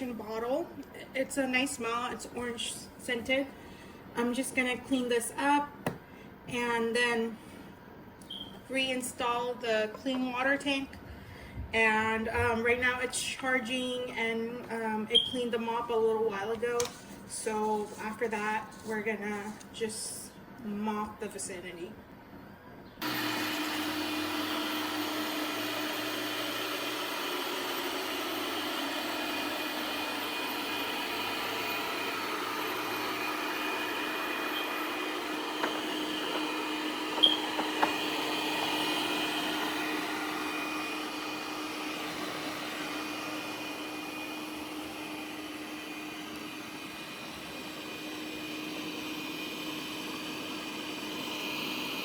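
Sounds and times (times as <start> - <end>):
robot vacuum motor humming: 23.0 - 52.0.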